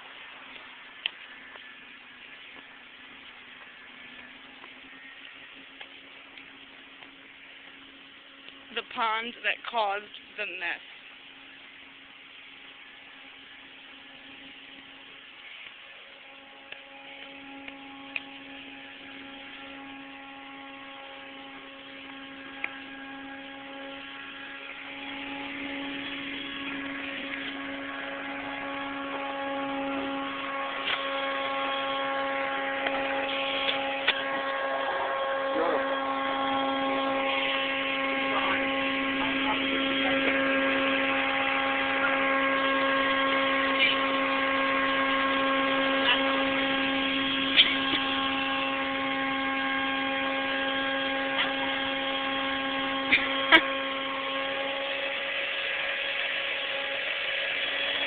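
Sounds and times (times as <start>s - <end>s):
machine hum with pitched drone: 0.0s - 58.0s.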